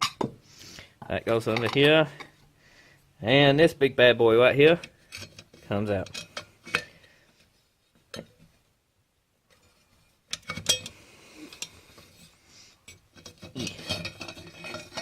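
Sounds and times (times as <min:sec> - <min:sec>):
metal parts clinking and knocking: 0:05.0 - 0:06.9, 0:10.3 - 0:11.7, 0:12.9 - 0:15.0.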